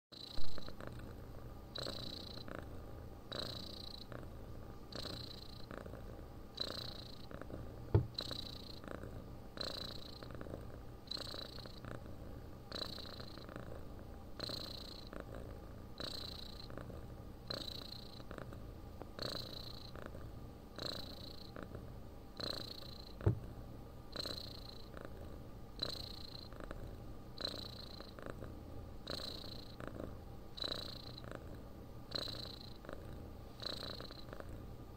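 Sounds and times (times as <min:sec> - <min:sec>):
cat snoring and purring: 0:00.1 - 0:23.5, 0:24.1 - 0:34.8.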